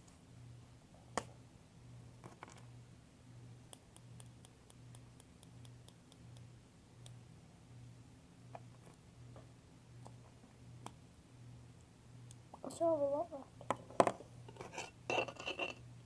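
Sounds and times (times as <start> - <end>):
faint low hum: 0.0 - 16.0
light evenly spaced ticks: 3.6 - 7.2.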